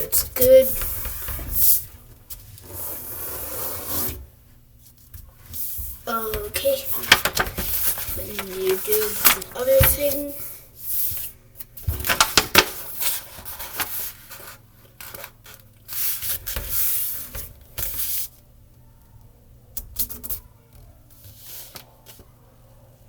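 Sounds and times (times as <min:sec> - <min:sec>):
paper rustling and crinkling: 0:06.3 - 0:10.4, 0:11.8 - 0:15.6
paper snapping: 0:07.0 - 0:10.1, 0:12.0 - 0:12.8.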